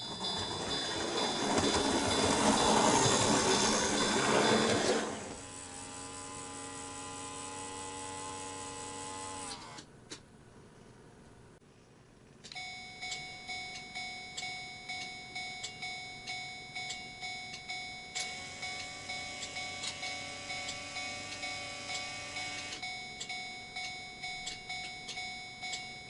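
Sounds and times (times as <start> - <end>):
electronic crossing warning bell: 0.0 - 5.4, 12.5 - 26.0.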